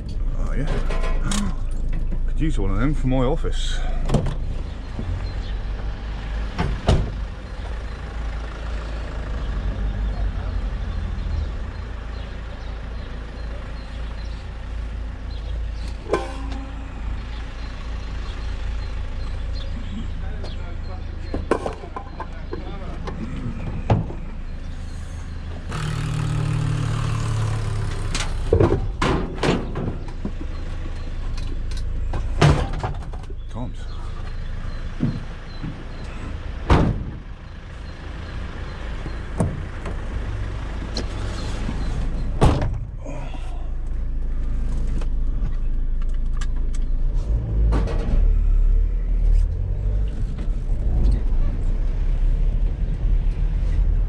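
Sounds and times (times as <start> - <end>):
van engine running: 0.0 - 54.0.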